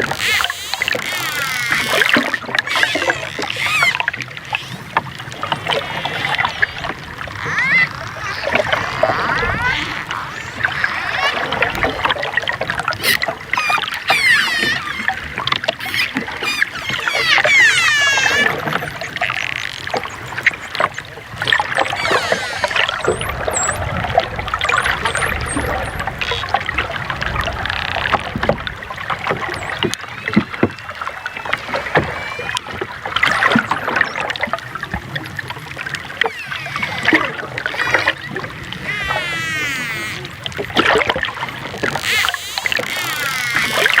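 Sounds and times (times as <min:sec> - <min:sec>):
dolphin clicks: 0:00.0 - 0:12.2, 0:13.0 - 0:23.8, 0:36.2 - 0:44.0
rapid buzzing pulses: 0:00.0 - 0:34.0
dolphin whistles: 0:02.7 - 0:12.1, 0:13.0 - 0:23.9, 0:29.5 - 0:34.3, 0:36.2 - 0:40.4.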